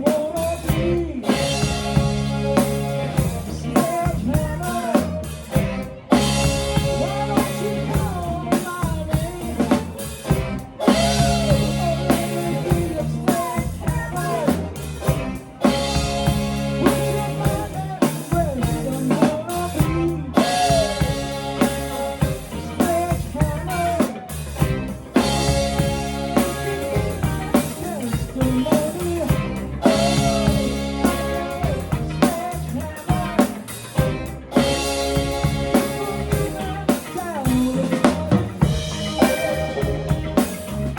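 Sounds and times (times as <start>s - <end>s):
bass: 0.0s - 40.9s
drum kit beat: 0.0s - 40.9s
person singing: 0.0s - 40.9s.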